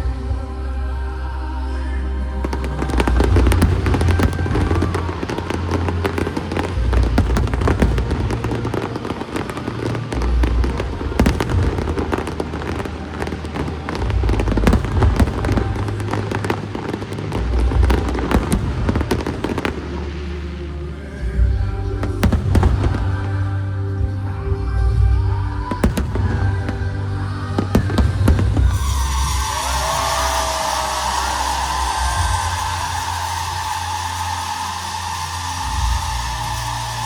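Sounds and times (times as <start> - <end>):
loud music with heavy bass: 0.0 - 37.0
fireworks crackling and popping: 2.4 - 37.0.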